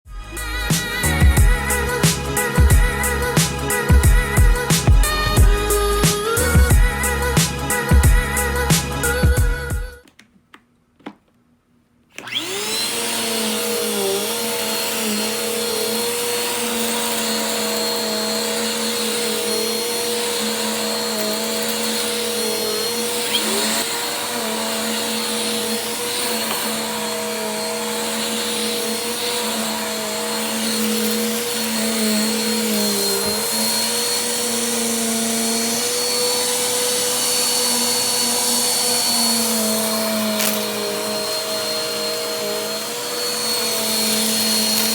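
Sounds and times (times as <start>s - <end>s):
vacuum cleaner running: 0.0s - 9.9s, 12.2s - 44.9s.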